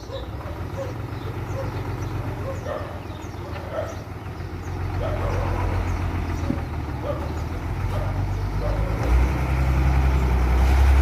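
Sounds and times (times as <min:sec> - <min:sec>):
dog barking: 0:00.0 - 0:01.8, 0:02.4 - 0:04.1, 0:05.0 - 0:05.8, 0:07.0 - 0:09.0
diesel engine running: 0:00.0 - 0:11.0.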